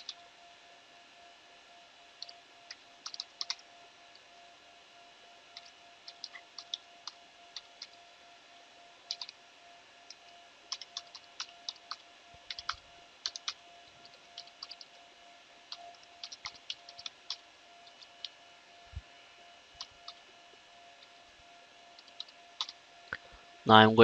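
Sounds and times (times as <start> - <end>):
faint steady hum: 0.0 - 24.0
keyboard typing clicks: 2.2 - 3.6, 5.6 - 8.0, 9.1 - 9.4, 10.7 - 14.9, 15.7 - 18.4, 22.0 - 22.8.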